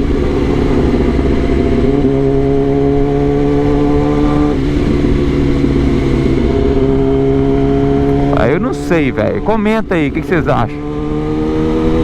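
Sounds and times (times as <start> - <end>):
low rumble: 0.0 - 8.4
motorcycle engine running: 0.0 - 12.0.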